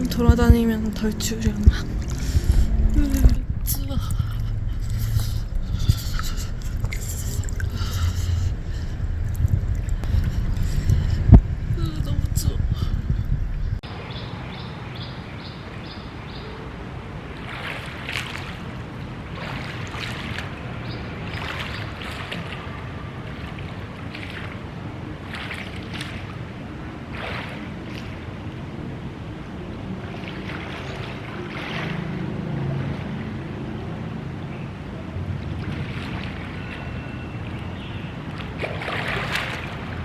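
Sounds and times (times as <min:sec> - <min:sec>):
pool water splashing: 0:00.0 - 0:12.8, 0:13.5 - 0:40.0
wash of water noise: 0:00.0 - 0:14.0, 0:17.0 - 0:28.9, 0:29.6 - 0:34.2, 0:38.2 - 0:40.0.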